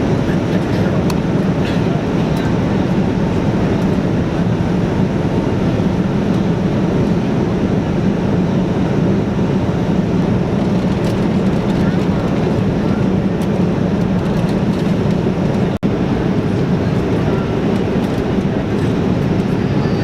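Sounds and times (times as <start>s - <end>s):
airplane cabin noise: 0.0s - 20.0s.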